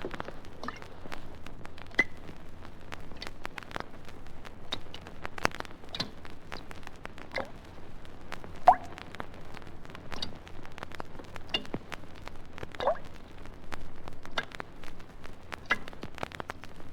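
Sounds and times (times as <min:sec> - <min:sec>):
water dripping plinks: 0:00.0 - 0:01.0, 0:05.9 - 0:06.2, 0:07.3 - 0:07.6, 0:08.6 - 0:09.0, 0:11.4 - 0:11.8, 0:12.8 - 0:13.1, 0:15.6 - 0:15.9
vinyl crackle and clicks: 0:00.0 - 0:16.9.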